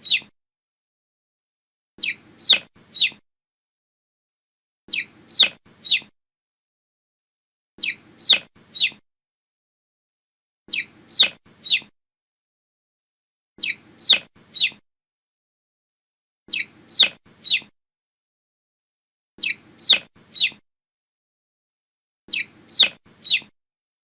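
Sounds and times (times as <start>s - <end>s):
baby chick peeping: 0.0s - 0.3s, 2.0s - 3.2s, 4.9s - 6.1s, 7.8s - 9.0s, 10.7s - 11.9s, 13.6s - 14.8s, 16.5s - 17.7s, 19.4s - 20.6s, 22.3s - 23.5s.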